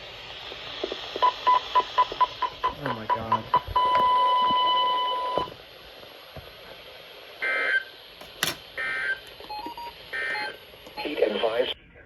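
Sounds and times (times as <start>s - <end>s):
sharp click: 8.2s - 8.6s.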